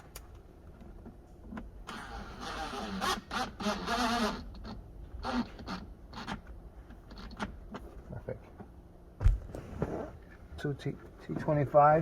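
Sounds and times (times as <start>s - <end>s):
cordless drill driving screw: 1.9s - 6.4s.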